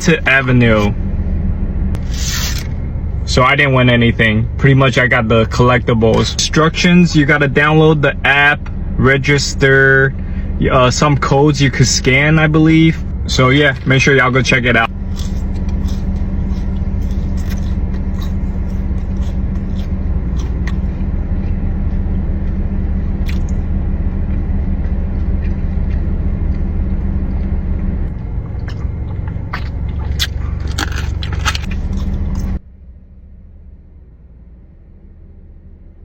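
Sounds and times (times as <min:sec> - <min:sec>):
car engine idling: 0:00.0 - 0:36.0
clicks and bites of eating: 0:15.0 - 0:22.6, 0:23.2 - 0:23.7, 0:24.3 - 0:27.5, 0:28.1 - 0:32.6.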